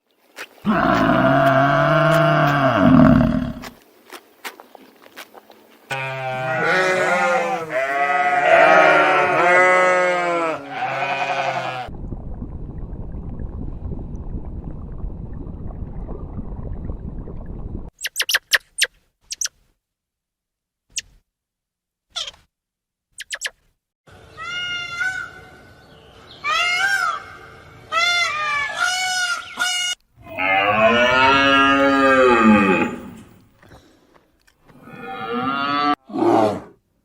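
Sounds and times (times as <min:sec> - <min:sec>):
sheep or goat bleating: 0:05.9 - 0:11.9
low rumbling noise: 0:11.9 - 0:17.9.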